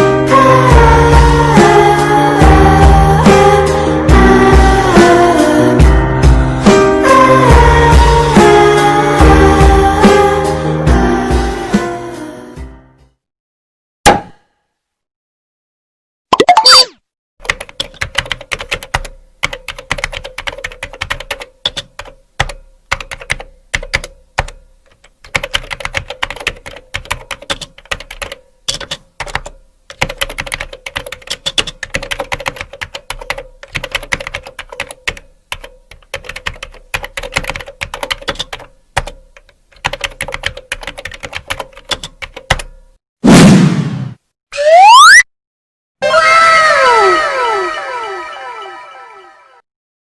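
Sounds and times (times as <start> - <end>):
computer keyboard typing: 17.4 - 42.8.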